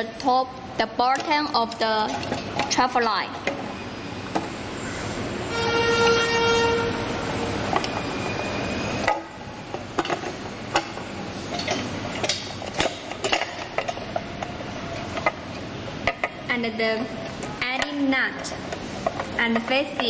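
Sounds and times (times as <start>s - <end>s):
horn blare: 5.4s - 7.4s.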